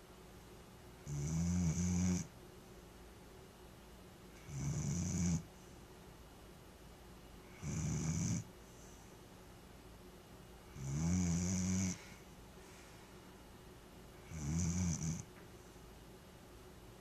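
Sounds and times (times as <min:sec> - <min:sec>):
dog snoring: 0:01.0 - 0:02.3, 0:04.4 - 0:05.5, 0:07.5 - 0:08.5, 0:10.7 - 0:12.2, 0:14.2 - 0:15.3.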